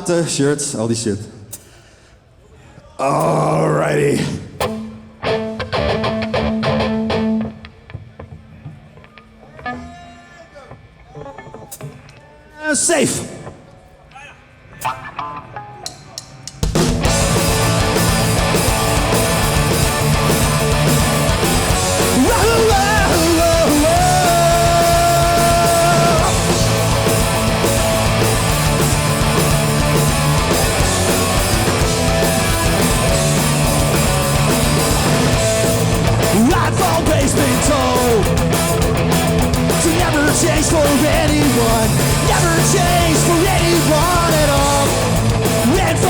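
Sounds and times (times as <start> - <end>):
drums: 1.4 - 1.9, 3.0 - 46.0
bass guitar: 4.6 - 7.7, 16.7 - 46.0
distorted guitars: 4.6 - 12.2, 14.6 - 46.0.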